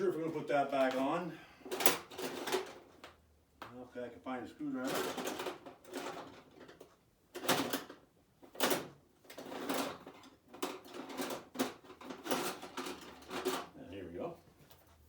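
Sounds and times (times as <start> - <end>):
tools clattering and scraping: 0.2 - 3.1, 4.8 - 13.8.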